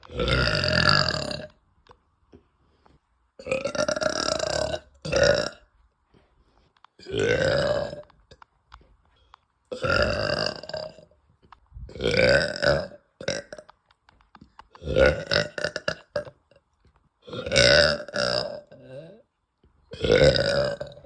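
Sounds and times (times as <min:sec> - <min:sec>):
woman belching: 0:00.0 - 0:01.6, 0:03.4 - 0:05.7, 0:07.0 - 0:08.1, 0:09.7 - 0:11.1, 0:11.9 - 0:13.7, 0:14.8 - 0:16.6, 0:17.2 - 0:19.2, 0:19.9 - 0:21.0.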